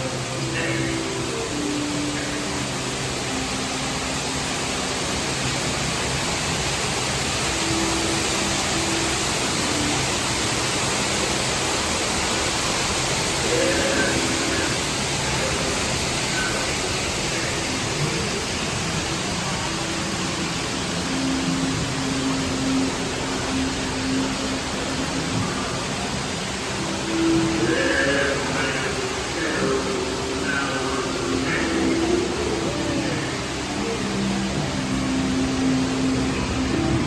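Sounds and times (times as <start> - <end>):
steady rushing noise: 0.0 - 37.0.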